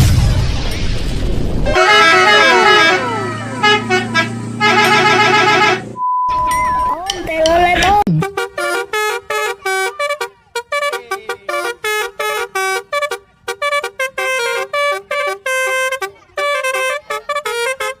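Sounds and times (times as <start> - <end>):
bus horn playing a tune: 1.7 - 6.0, 8.2 - 18.0.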